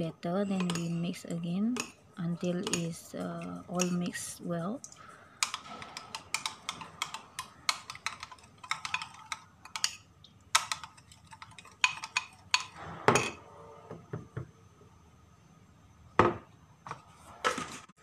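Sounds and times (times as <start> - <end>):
spoon clinking against bowl: 0.4 - 1.1, 1.7 - 4.2.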